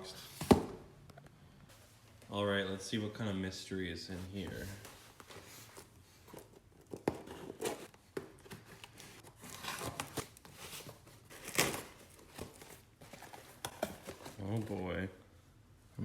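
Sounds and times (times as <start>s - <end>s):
packaging tearing and crinkling: 9.2s - 14.6s.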